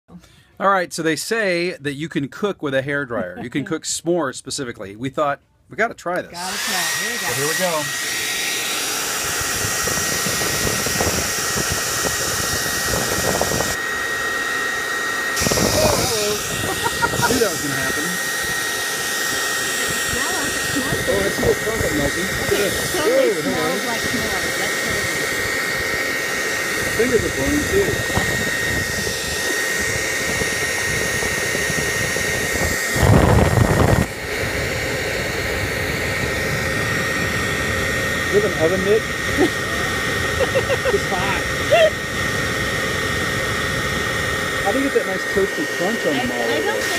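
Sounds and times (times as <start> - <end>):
hair dryer blowing: 6.3 - 46.9
loud low rush: 15.4 - 45.8.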